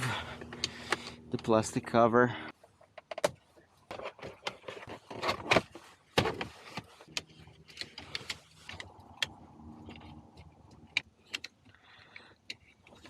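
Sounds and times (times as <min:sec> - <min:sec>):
faint steady hum: 0:00.0 - 0:02.9.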